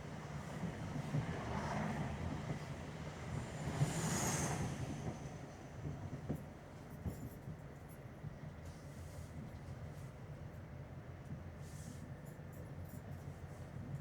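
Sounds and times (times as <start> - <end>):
train carriage rumbling on rails: 0.0 - 8.6.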